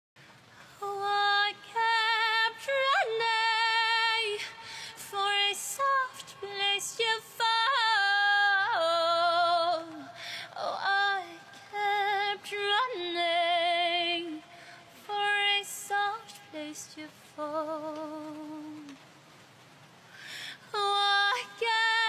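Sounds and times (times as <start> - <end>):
woman singing solo: 0.8 - 19.0, 20.6 - 22.0
singer breathing: 4.6 - 5.0, 10.2 - 10.6, 14.5 - 14.9, 20.0 - 20.7.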